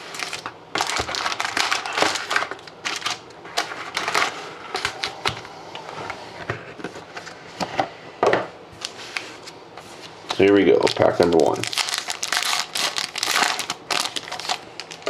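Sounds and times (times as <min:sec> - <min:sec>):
card pack wrappers crinkling: 0:00.0 - 0:05.4, 0:10.3 - 0:15.0.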